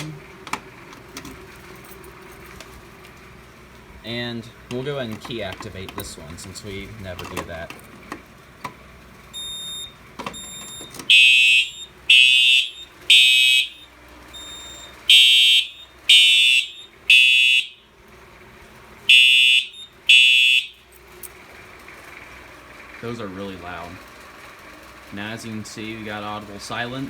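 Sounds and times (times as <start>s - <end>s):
faint high beeps: 9.4s - 16.9s, 19.2s - 20.8s
loud alarm horn blasts: 9.4s - 18.0s, 19.1s - 20.9s.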